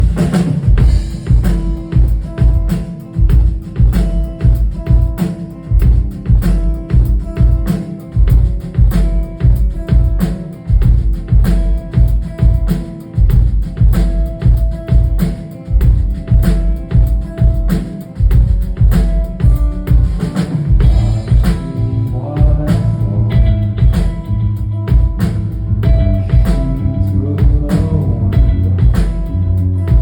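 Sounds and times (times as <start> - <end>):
drum kit beating: 0.0 - 30.0
heavy bass: 0.0 - 30.0
sustained guitar lines: 0.0 - 30.0.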